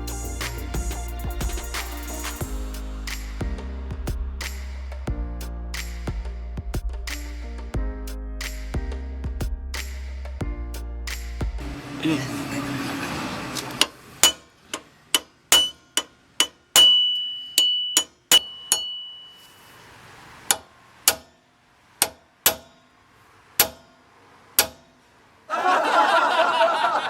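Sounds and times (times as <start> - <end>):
hammer striking steel: 13.8 - 19.6, 20.5 - 21.4, 22.0 - 22.9, 23.6 - 24.0, 24.6 - 25.0.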